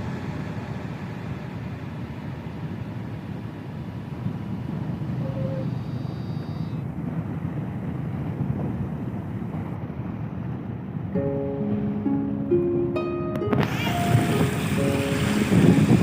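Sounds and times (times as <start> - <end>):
boat engine rumble: 0.0 - 16.0
wind on microphone: 4.1 - 11.1, 13.4 - 16.0.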